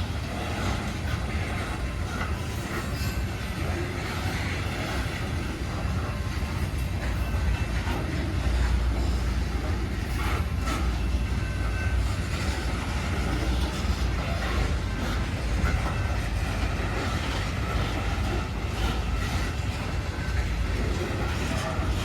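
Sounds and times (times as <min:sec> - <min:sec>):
train cars rumbling on rails: 0:00.0 - 0:22.0.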